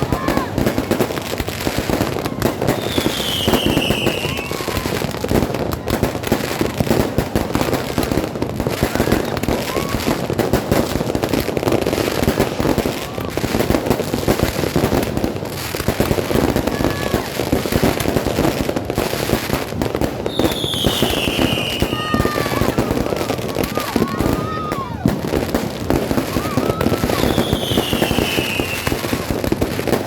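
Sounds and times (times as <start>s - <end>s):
firecrackers cracking and popping: 0.0s - 30.0s
falling firework whistle: 1.8s - 5.3s, 20.2s - 30.0s.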